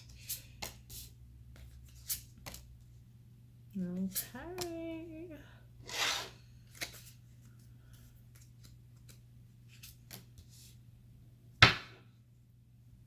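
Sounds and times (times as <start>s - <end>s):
low steady hum: 0.0s - 13.0s
cards rustling and clicking: 0.1s - 2.9s, 4.1s - 4.8s, 6.6s - 10.8s.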